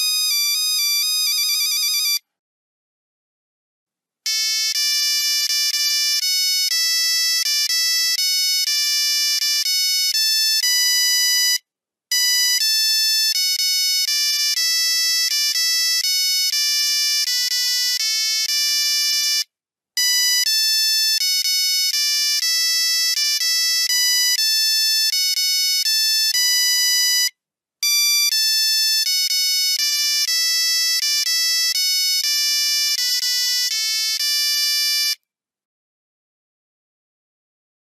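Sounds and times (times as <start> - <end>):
monophonic ringtone beeps: 0.1 - 2.2, 20.0 - 35.2.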